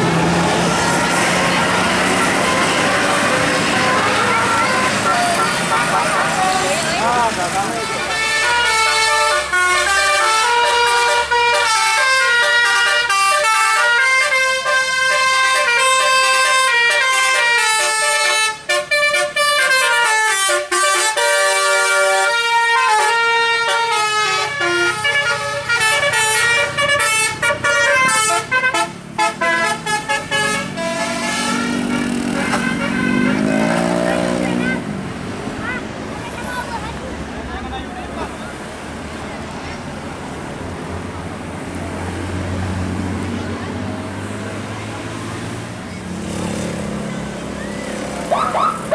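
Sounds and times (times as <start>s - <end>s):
bus horn playing tune: 0.0s - 34.9s.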